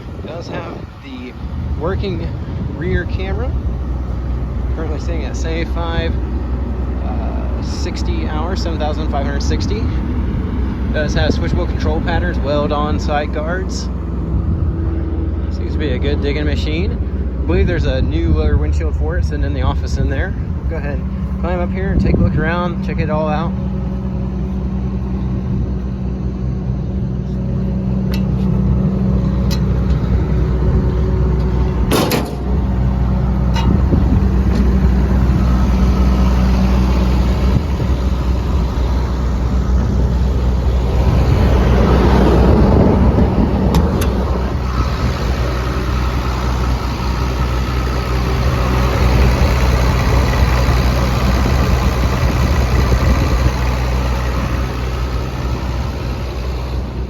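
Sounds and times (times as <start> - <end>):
diesel excavator engine running: 0.0 - 57.0
loud rushing sound: 37.0 - 46.3.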